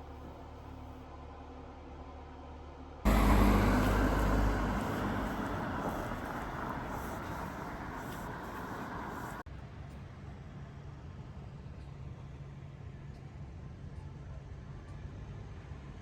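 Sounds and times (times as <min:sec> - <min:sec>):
vehicle low rumble: 0:02.1 - 0:09.5.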